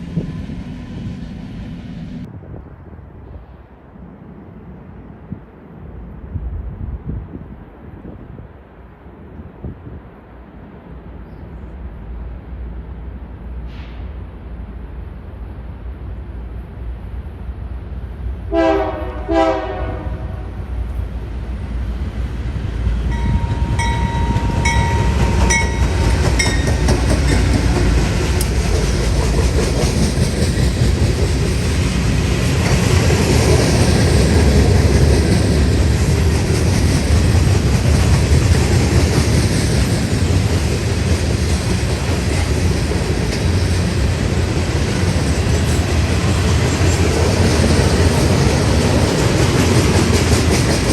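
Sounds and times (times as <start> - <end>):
train rumbling past: 0.0 - 50.9
locomotive air horn blasts: 18.5 - 20.6
wheels clicking over rail joints: 23.1 - 50.9.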